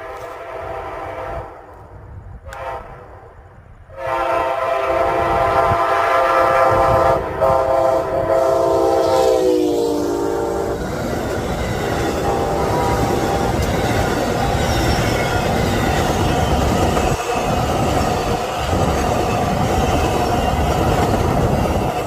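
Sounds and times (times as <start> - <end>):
locomotive horn blast: 0.0 - 1.6, 2.5 - 3.1, 3.9 - 10.8, 12.2 - 13.7
train cars rumbling and clattering: 3.4 - 22.0.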